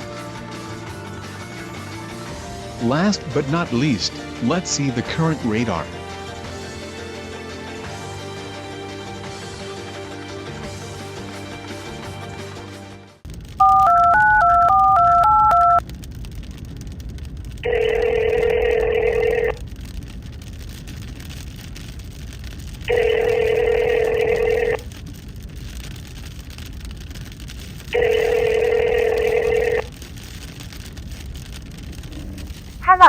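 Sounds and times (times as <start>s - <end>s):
background music: 0.0s - 13.2s
telephone ringback tone: 13.6s - 15.8s, 17.7s - 19.6s, 22.9s - 24.8s, 28.0s - 29.9s
touch-tone dialing beeps: 13.6s - 15.8s, 28.0s - 29.9s.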